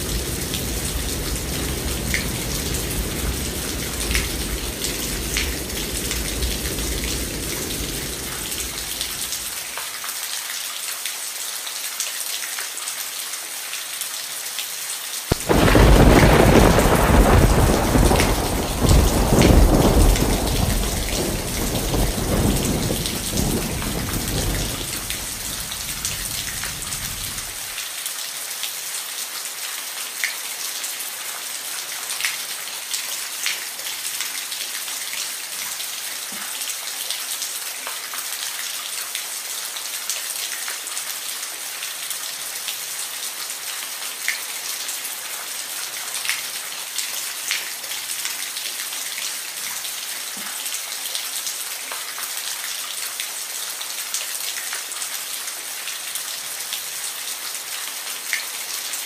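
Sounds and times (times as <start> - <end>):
thunder rumbling: 0.0 - 9.6, 15.3 - 27.7
steady rain falling: 0.0 - 59.0.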